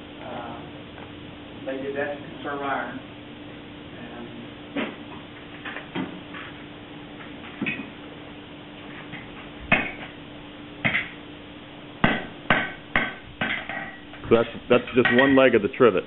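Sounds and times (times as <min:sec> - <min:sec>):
hammer striking iron on anvil: 0:09.7 - 0:10.0, 0:12.0 - 0:14.0, 0:14.9 - 0:15.5.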